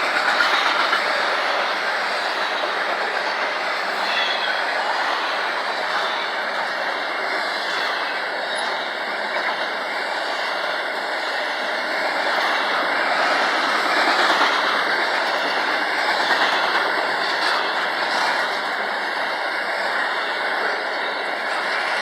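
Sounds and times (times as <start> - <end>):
train wheels on rail: 0.0 - 22.0.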